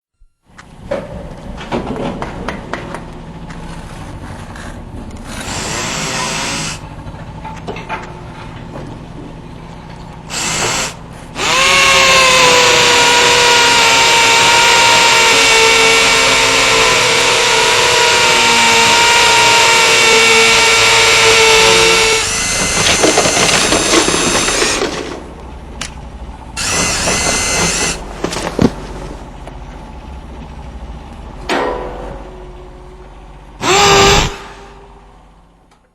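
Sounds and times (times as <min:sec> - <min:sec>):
electric power drill whining: 0:05.3 - 0:06.8, 0:10.3 - 0:25.2, 0:26.6 - 0:28.8, 0:33.6 - 0:34.8.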